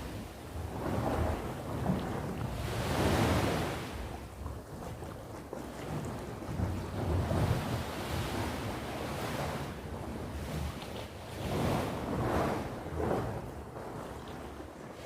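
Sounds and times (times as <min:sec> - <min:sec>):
sea waves breaking on shore: 0:00.0 - 0:15.0
wind rumble on microphone: 0:00.0 - 0:15.0.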